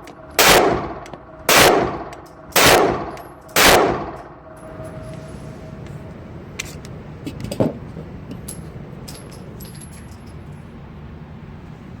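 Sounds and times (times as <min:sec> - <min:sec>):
steady low background noise: 0:00.0 - 0:12.0
light metallic clicks and clinks: 0:08.3 - 0:10.7.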